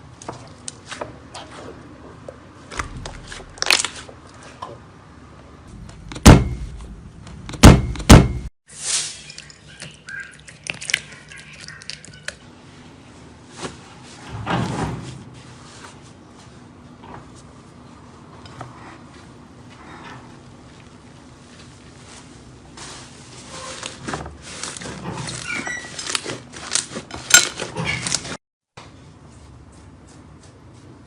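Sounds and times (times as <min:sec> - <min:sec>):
heavy thuds: 0:05.7 - 0:08.5.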